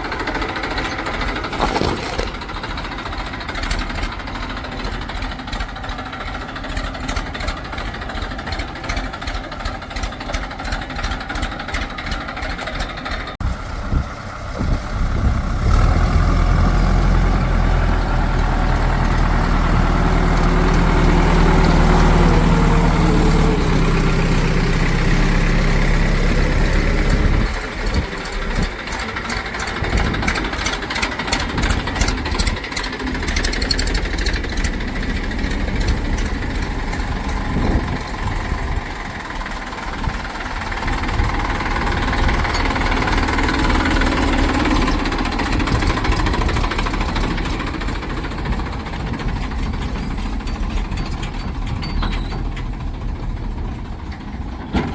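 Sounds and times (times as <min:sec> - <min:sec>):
heavy diesel engine running: 0:00.0 - 0:54.9
fast rattle: 0:27.5 - 0:53.1.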